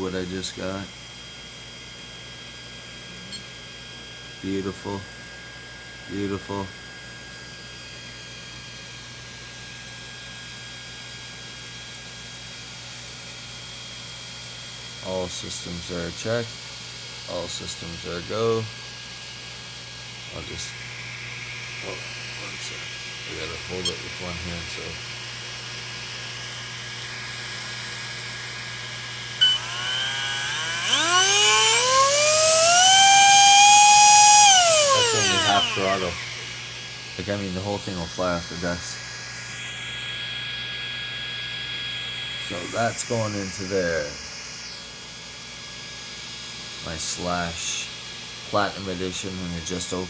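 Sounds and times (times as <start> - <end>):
electrical hum and hiss: 0.0 - 50.0
electric motor whine: 25.5 - 45.0.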